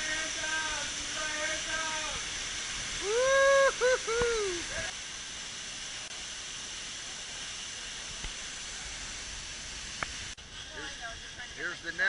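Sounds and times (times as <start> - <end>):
waterfall rushing: 0.0 - 12.0
person whooping: 3.0 - 4.9.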